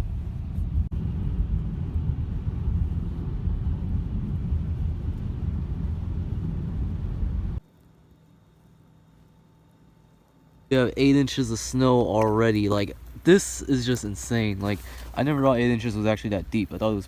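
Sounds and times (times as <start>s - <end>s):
wind buffeting microphone: 0.0s - 7.6s.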